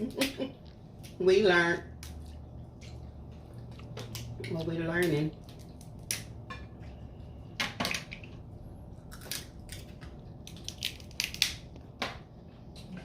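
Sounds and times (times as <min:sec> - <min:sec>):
crab shells cracking and snapping: 0:03.8 - 0:06.4, 0:09.0 - 0:12.2.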